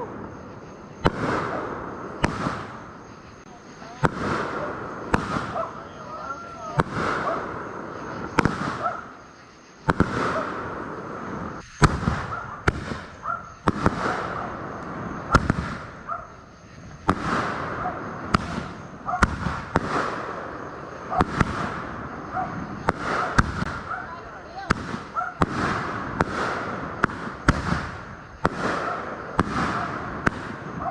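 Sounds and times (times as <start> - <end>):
fireworks booming: 0.0 - 30.9
fireworks crackle and hiss: 0.0 - 30.9.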